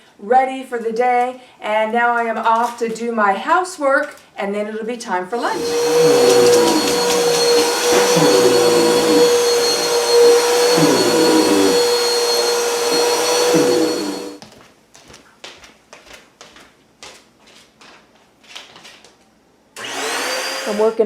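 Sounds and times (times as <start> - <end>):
vacuum cleaner running: 5.3 - 14.4, 19.8 - 21.0.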